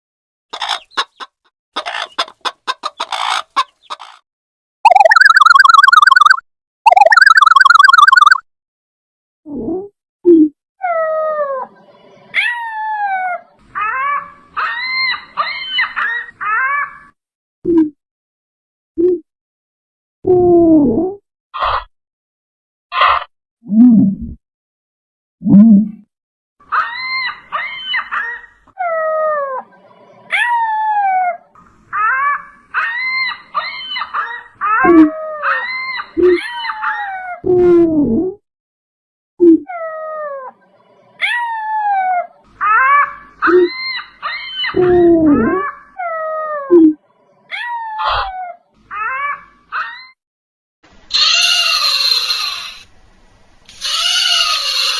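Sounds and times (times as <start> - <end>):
quick wavering calls: 4.8 - 8.4, 51.1 - 52.9.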